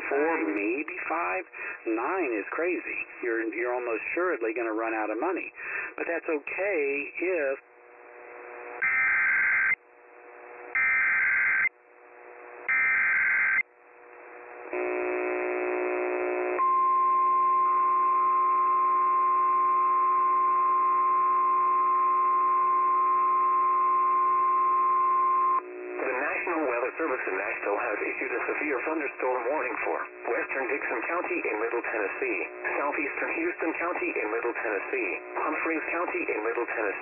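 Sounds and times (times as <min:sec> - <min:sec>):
steady attention tone: 0:07.6 - 0:36.5
screechy warbling data bursts: 0:08.8 - 0:09.8, 0:10.8 - 0:11.7, 0:12.7 - 0:13.6.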